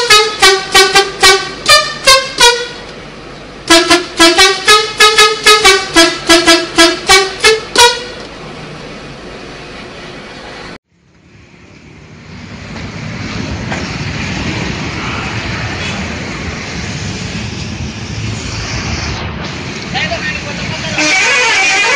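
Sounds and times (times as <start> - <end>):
bus horn toots: 0.0 - 2.9, 3.6 - 8.3, 21.0 - 21.9
vehicle noise rumble: 0.0 - 21.9.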